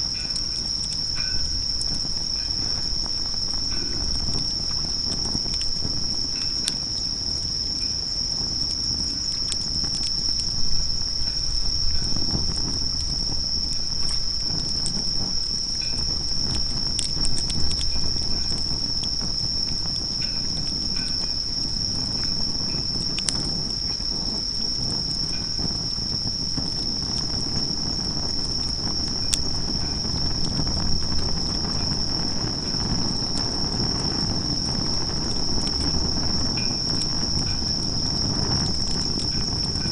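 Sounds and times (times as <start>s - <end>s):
crickets chirping: 0.0s - 39.9s
low rumble: 0.0s - 39.9s
wood fire crackling: 0.0s - 39.9s.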